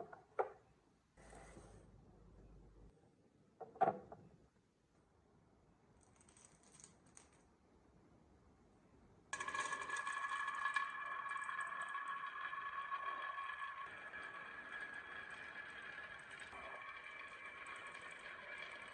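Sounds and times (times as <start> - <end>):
marbles clicking: 9.4 - 18.9
marbles rolling rattle: 9.4 - 18.9.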